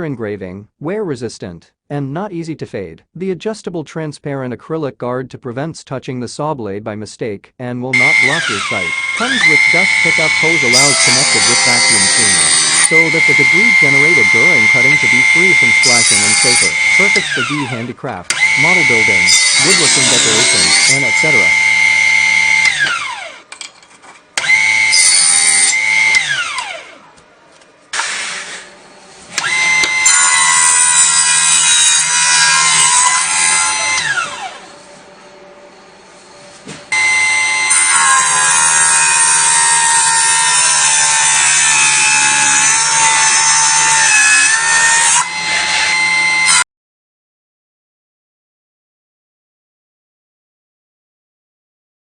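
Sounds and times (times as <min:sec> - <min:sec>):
saw cutting material: 0:08.0 - 0:23.5, 0:24.3 - 0:27.2, 0:27.9 - 0:46.7
table saw motor whine: 0:08.0 - 0:23.5, 0:24.4 - 0:27.2, 0:28.0 - 0:46.6.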